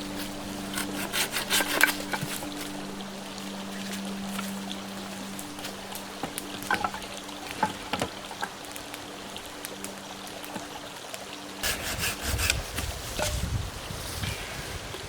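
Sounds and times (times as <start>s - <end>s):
hand saw strokes on wood: 0.2s - 2.7s, 11.6s - 13.5s.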